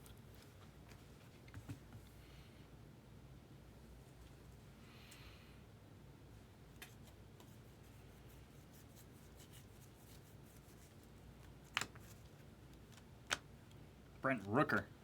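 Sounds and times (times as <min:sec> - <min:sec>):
cards and packs rustling: 0:09.7 - 0:13.5.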